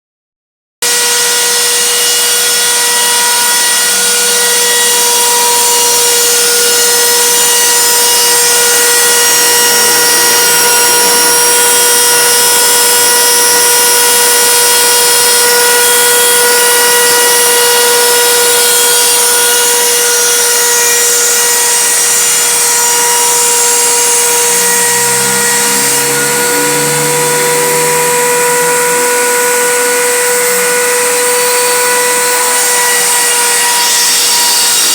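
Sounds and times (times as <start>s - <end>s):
router spindle whine: 0.8s - 34.9s
low shifting hum: 6.6s - 16.2s, 21.8s - 32.4s.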